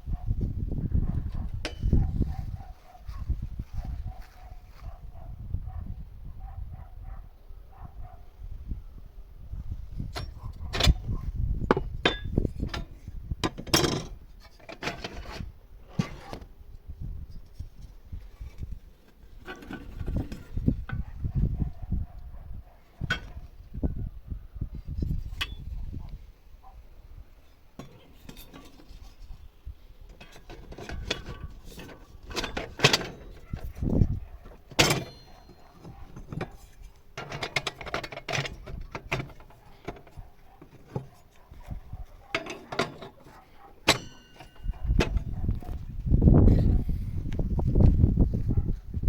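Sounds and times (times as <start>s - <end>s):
metal parts clanking: 11.7s - 16.2s, 27.8s - 29.3s, 30.1s - 45.8s
ringing metal strikes: 43.9s - 45.0s.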